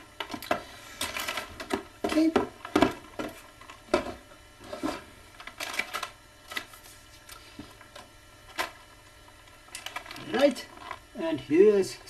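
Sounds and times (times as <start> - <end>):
packaging clicks and rustles: 4.8 - 11.0.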